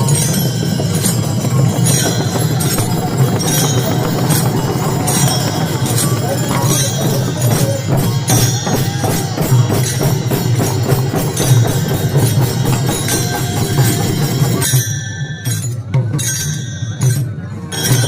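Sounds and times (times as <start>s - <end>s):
drumming: 0.0s - 16.4s
hand cymbals clashing: 0.0s - 18.0s.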